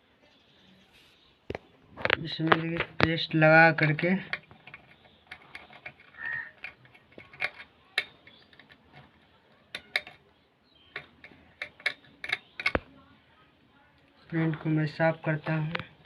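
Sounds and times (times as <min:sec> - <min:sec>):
small clicks and taps: 0:03.8 - 0:12.9.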